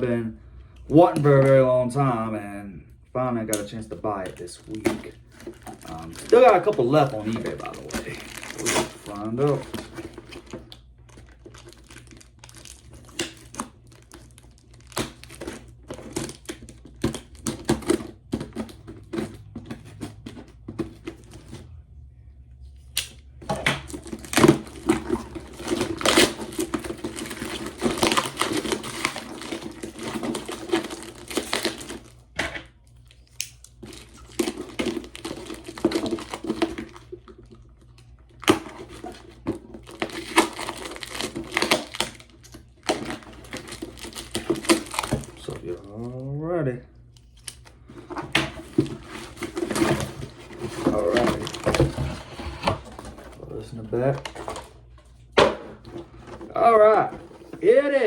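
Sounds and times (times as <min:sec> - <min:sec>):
cardboard tearing and crinkling: 0:04.2 - 0:21.6, 0:23.9 - 0:32.3, 0:33.7 - 0:46.2, 0:47.3 - 0:54.8.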